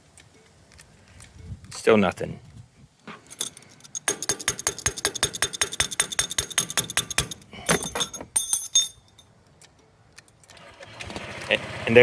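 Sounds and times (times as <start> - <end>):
rapid metallic tapping: 3.2 - 7.5.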